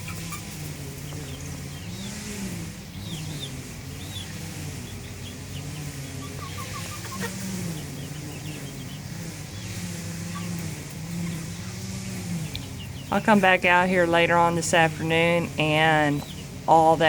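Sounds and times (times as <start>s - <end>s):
small engine droning: 0.0s - 17.0s
high bird chirps: 2.9s - 10.6s.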